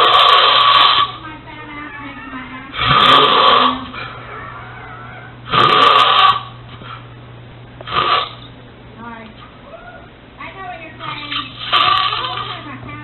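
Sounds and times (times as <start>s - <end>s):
person snoring loudly: 0.0s - 1.2s, 2.8s - 4.0s, 5.5s - 6.5s, 11.4s - 12.6s
steady low hum: 0.0s - 13.0s.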